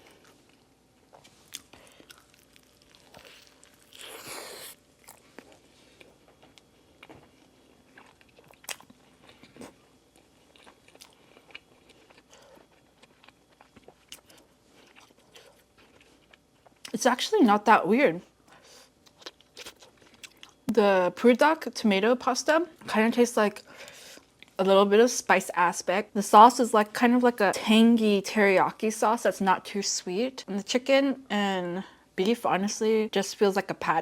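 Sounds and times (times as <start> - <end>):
close-miked chewing: 0.0 - 17.0, 18.4 - 20.7.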